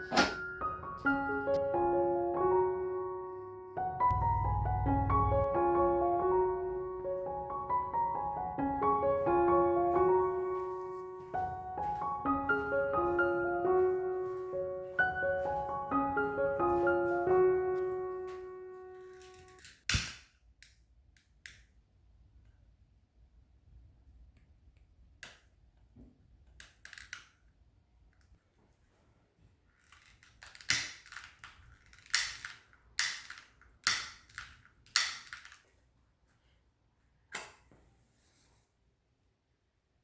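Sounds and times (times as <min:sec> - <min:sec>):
sharp clicks of objects handled: 0:19.2 - 0:21.8, 0:24.4 - 0:25.6, 0:26.4 - 0:28.4, 0:29.7 - 0:35.8.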